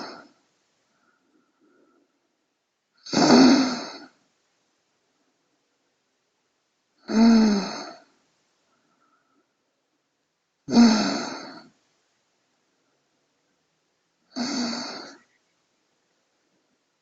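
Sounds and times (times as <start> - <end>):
person snoring: 0.0 - 0.4, 3.0 - 4.1, 7.0 - 8.1, 10.7 - 11.7, 14.3 - 15.2.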